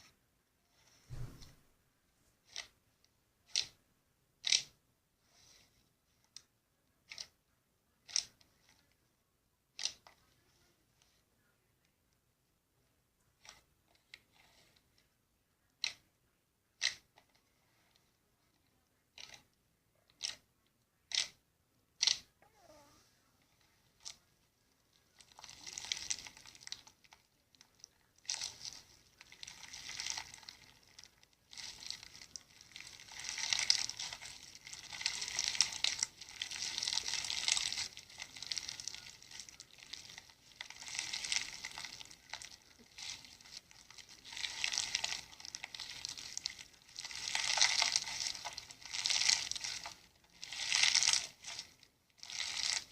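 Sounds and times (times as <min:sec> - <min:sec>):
slime crackling and popping: 0:21.1 - 0:21.4, 0:25.2 - 0:52.9.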